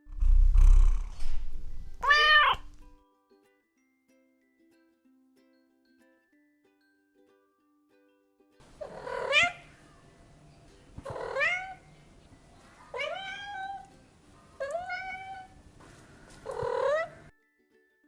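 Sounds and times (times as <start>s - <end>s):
cat meowing: 1.6s - 2.8s, 8.8s - 10.0s, 11.0s - 11.9s, 12.8s - 13.9s, 14.6s - 15.6s, 16.3s - 17.3s.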